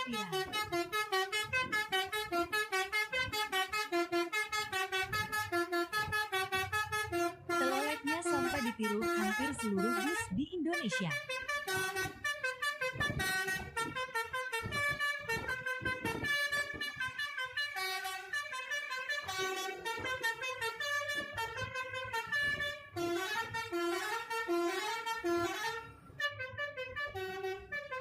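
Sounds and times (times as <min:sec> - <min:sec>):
musical bus horn tune: 0:00.0 - 0:28.0.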